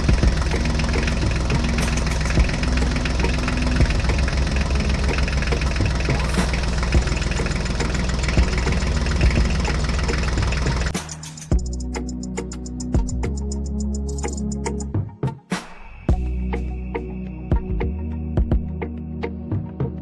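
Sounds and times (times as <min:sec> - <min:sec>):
truck engine idling: 0:00.0 - 0:13.6.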